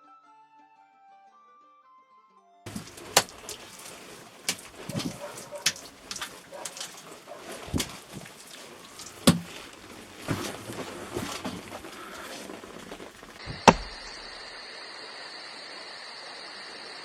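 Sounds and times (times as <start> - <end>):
knocks and scrapes of masonry work: 2.7 - 14.3
steady hiss: 2.7 - 17.0.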